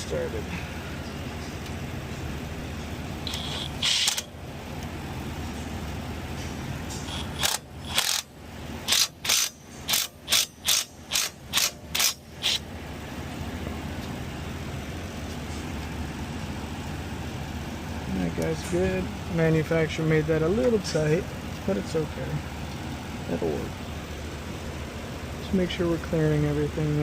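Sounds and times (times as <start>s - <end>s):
ratchet wrench clicking: 3.3s - 4.3s, 6.9s - 12.6s.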